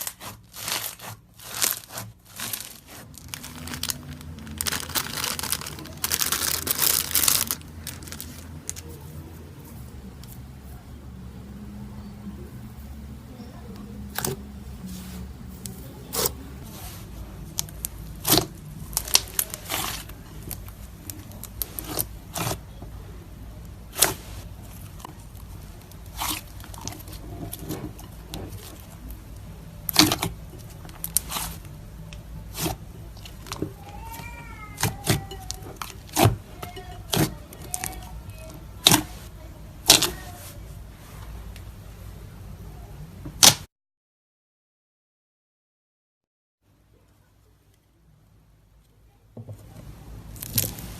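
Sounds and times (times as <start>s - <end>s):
slime squishing and popping: 17.5s - 22.8s, 23.7s - 39.2s, 39.8s - 40.3s.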